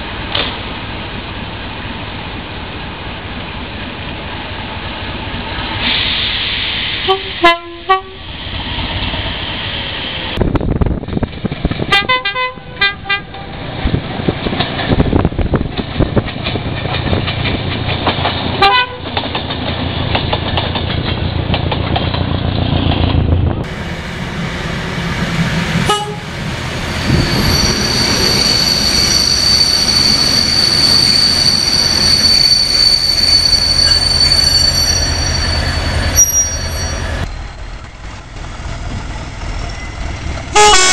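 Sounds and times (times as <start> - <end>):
train rumble: 0.0 - 40.9
train horn short blasts: 7.1 - 8.2, 11.9 - 13.3, 18.6 - 19.0, 25.8 - 26.3, 40.5 - 40.9
train high-pitched whine: 23.6 - 40.9.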